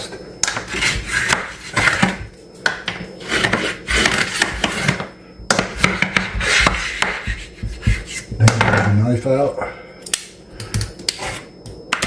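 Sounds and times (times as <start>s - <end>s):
tool scraping grout: 0.5s - 2.2s, 3.2s - 5.0s.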